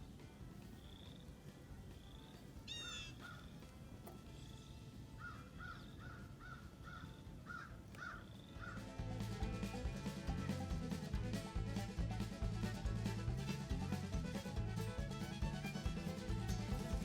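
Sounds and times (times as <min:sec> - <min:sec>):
sweeping bird call: 0:02.0 - 0:03.6
short cawing calls: 0:02.7 - 0:03.6, 0:05.2 - 0:09.0.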